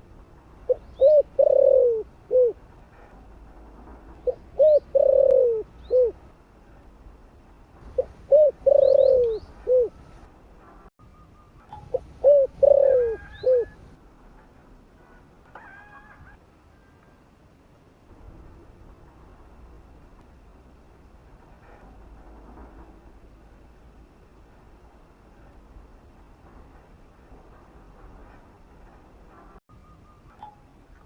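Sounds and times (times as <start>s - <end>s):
dove cooing: 0.7s - 2.6s, 4.2s - 6.2s, 7.9s - 10.0s, 11.9s - 13.9s.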